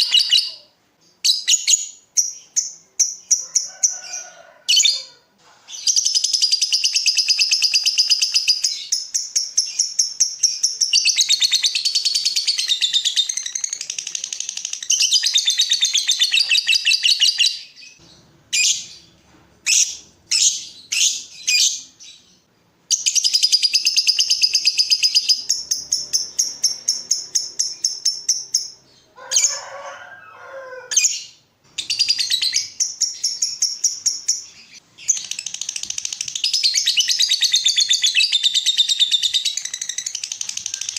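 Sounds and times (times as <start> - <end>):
lovebird chattering: 22.9 - 28.8.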